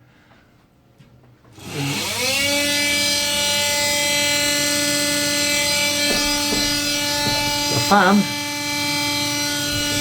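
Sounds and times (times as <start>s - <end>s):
extractor fan wailing whine: 1.5s - 10.0s.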